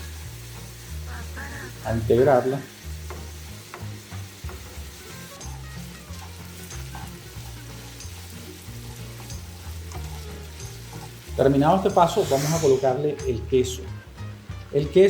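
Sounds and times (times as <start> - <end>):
meat and onions sizzling in a pan: 0.0 - 15.0
utensil clicking against pan: 3.0 - 11.3.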